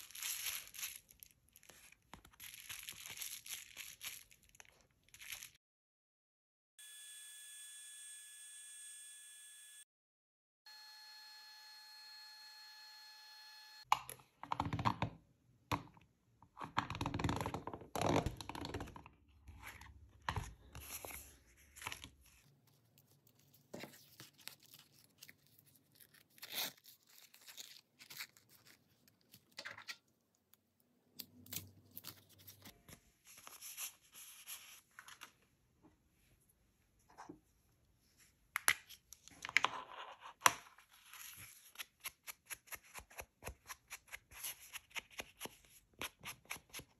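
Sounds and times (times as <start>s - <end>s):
paper tearing: 23.8s - 28.8s.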